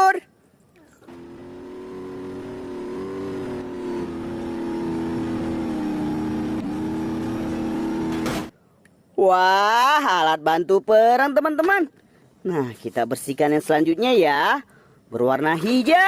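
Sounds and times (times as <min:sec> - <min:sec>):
vehicle engine running: 0:01.1 - 0:08.5.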